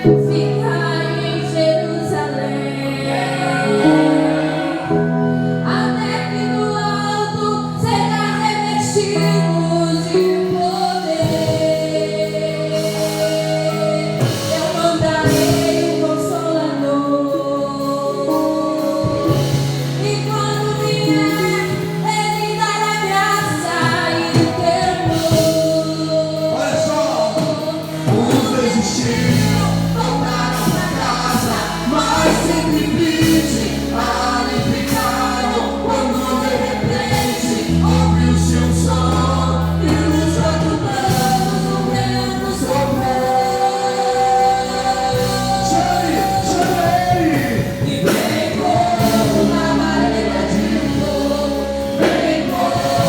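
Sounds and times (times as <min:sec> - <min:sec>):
bass: 0:00.0 - 0:53.0
keyboard: 0:00.0 - 0:53.0
voices singing together: 0:00.0 - 0:53.0
steady drum beat: 0:23.3 - 0:53.0.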